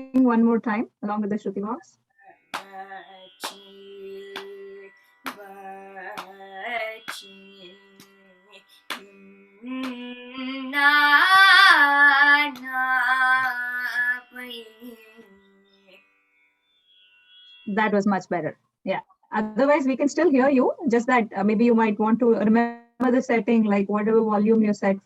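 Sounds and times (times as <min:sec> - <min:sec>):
shruti box drone: 0:01.6 - 0:18.5, 0:19.3 - 0:21.0.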